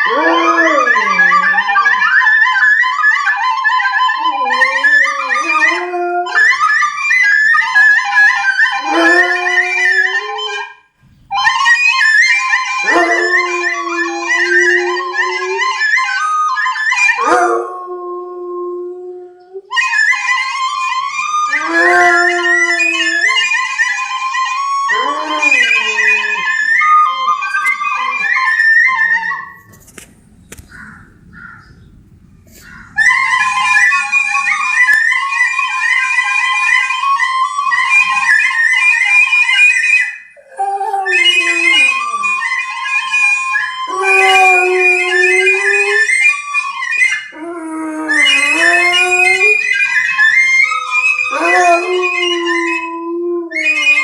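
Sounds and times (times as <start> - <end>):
dog howling and whining: 0.0 - 29.8, 32.6 - 54.0
high-pitched melody playing: 3.3 - 7.0, 11.4 - 16.2, 20.0 - 29.6.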